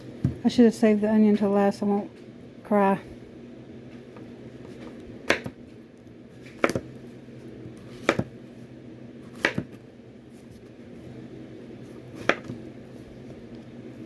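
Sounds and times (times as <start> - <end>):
low steady hum: 0.0 - 14.0
knife chopping on cutting board: 5.3 - 5.6, 6.4 - 6.9, 7.9 - 8.3, 9.3 - 9.8, 12.2 - 12.6.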